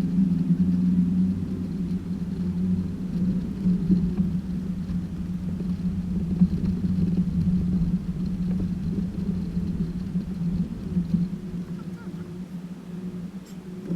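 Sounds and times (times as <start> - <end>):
truck engine low rumble: 0.0 - 13.9.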